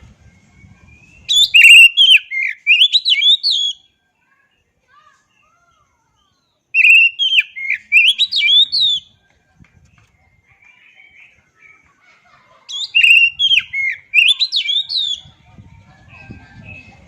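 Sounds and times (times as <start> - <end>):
bird singing whistled phrases: 0.1 - 3.9, 6.2 - 9.2, 12.7 - 15.3.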